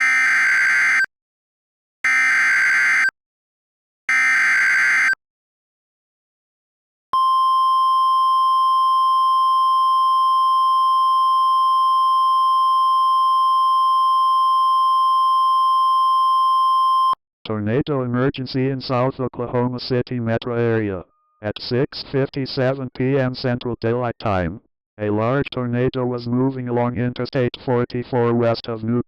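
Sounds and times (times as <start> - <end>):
single-pitched alarm tone: 2.0 - 3.1, 4.1 - 5.2, 7.2 - 17.2.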